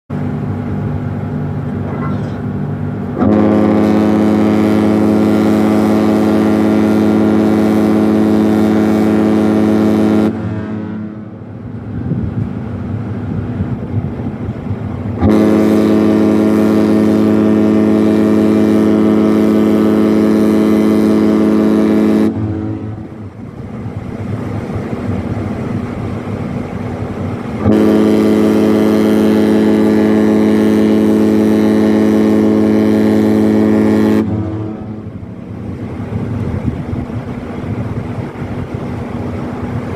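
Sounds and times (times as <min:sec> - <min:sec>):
ship horn blasts: 0:00.2 - 0:39.9
low rumble: 0:10.2 - 0:15.5, 0:34.2 - 0:39.9.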